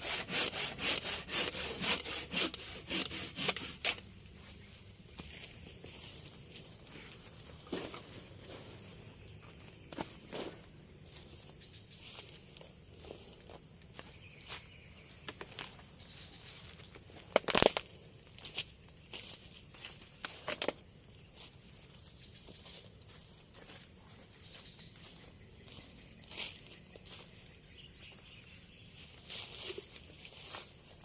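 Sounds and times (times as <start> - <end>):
forest insects droning: 0.0 - 31.0
crunches and knocks on forest floor: 6.5 - 8.8, 16.9 - 17.9, 20.2 - 20.8.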